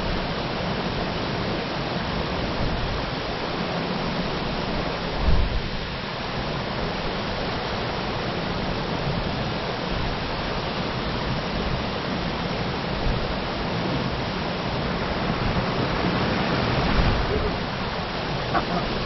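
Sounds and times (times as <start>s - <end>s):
waterfall rushing: 0.0s - 19.0s.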